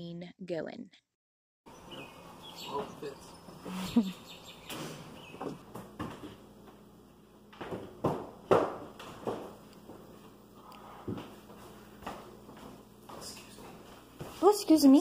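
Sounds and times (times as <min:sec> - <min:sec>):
knocks and thuds of flooring: 0:07.5 - 0:09.6.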